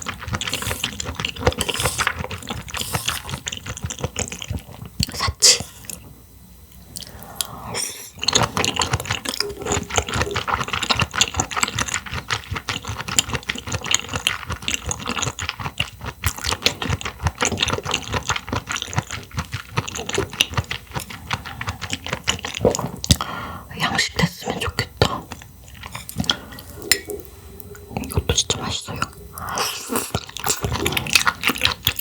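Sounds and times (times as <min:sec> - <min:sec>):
close chewing with mouth clicks: 0:00.0 - 0:06.1, 0:06.7 - 0:23.3, 0:24.2 - 0:32.0.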